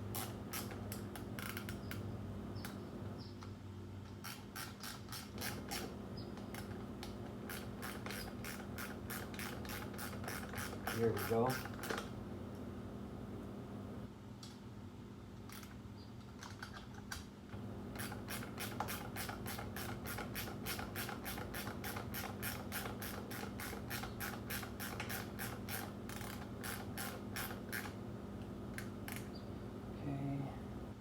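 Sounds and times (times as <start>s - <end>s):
steady low hum: 0.0s - 16.4s, 17.2s - 31.0s
ratchet wrench clicking: 0.1s - 2.0s, 4.1s - 12.1s, 18.0s - 28.0s.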